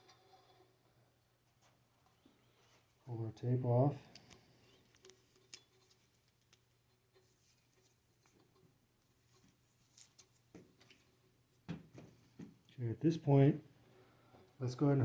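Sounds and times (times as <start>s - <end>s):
hands handling a cable: 4.1s - 8.5s, 9.2s - 11.1s.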